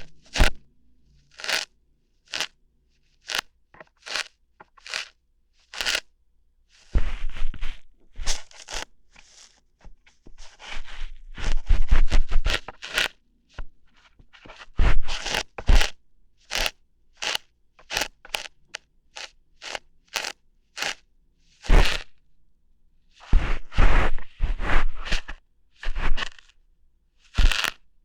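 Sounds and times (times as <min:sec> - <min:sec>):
ear-hair plucking crunches: 0:00.0 - 0:00.6, 0:01.2 - 0:06.1, 0:08.3 - 0:09.6, 0:11.4 - 0:13.2, 0:14.4 - 0:15.9, 0:16.5 - 0:21.0, 0:21.6 - 0:22.1, 0:27.4 - 0:27.8.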